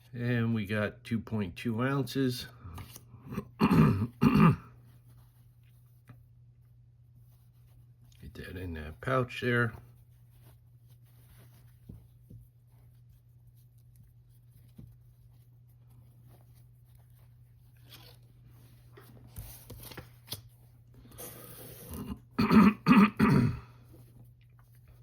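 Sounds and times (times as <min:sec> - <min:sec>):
handling and rustling: 0:04.8 - 0:21.0.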